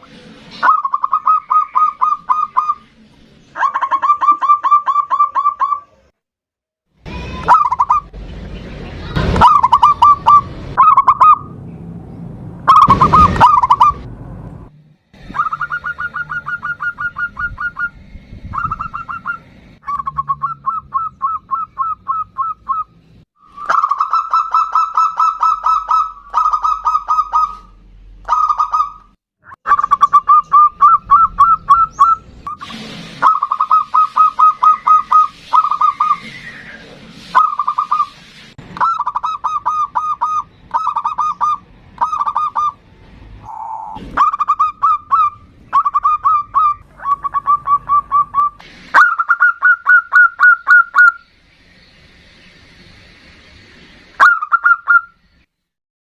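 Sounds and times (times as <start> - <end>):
dove cooing: 15.2 - 17.9, 43.5 - 51.1.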